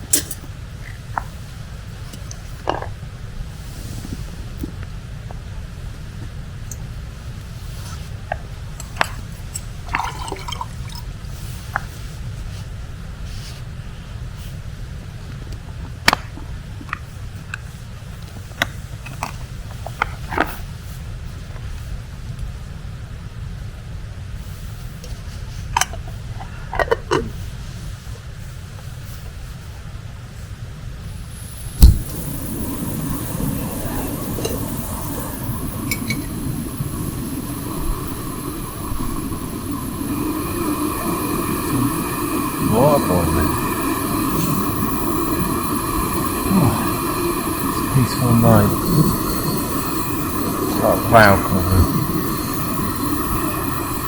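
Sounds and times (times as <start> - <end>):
gas stove burner roaring: 30.8 - 54.0.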